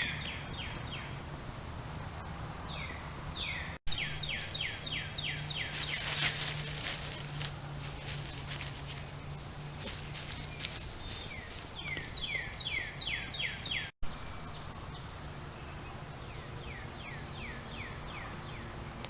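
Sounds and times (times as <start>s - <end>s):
rustling crackles: 4.0s - 12.7s.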